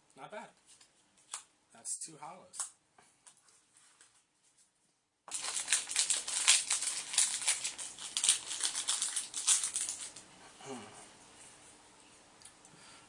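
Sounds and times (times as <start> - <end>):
foil wrapper crinkling and tearing: 5.3 - 10.2.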